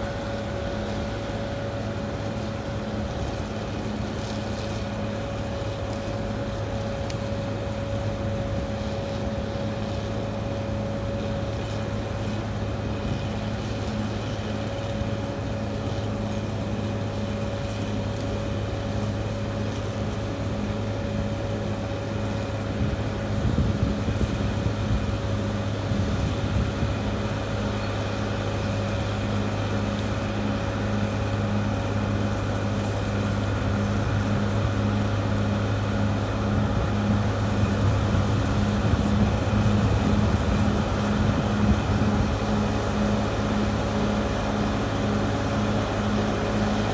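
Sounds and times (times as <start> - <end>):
bulldozer diesel engine running: 0.0 - 46.9.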